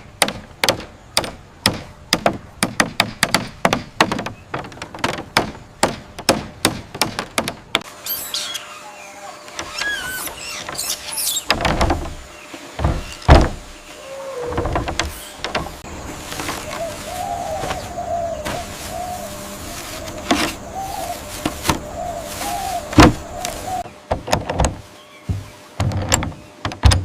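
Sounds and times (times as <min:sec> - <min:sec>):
rapid hammer-like knocks: 0:00.2 - 0:07.9
high squeaky chirps and squeals: 0:08.0 - 0:11.6
rustling scrape: 0:12.1 - 0:23.8.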